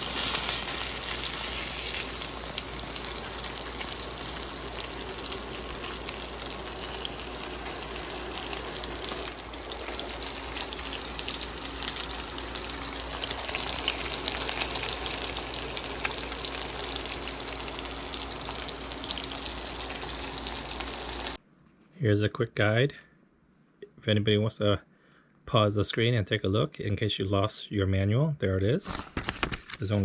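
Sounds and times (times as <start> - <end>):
food sizzling in a pan: 0.0 - 21.4.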